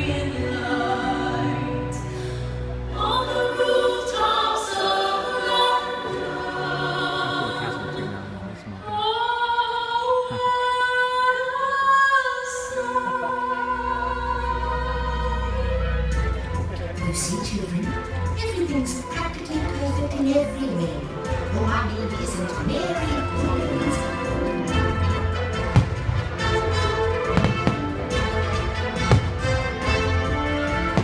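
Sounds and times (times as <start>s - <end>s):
choir singing long notes: 0.0s - 9.1s.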